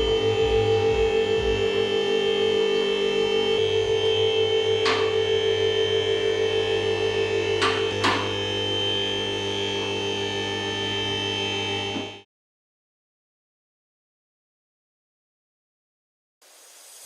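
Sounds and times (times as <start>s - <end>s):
music with sustained tones: 0.0s - 11.6s.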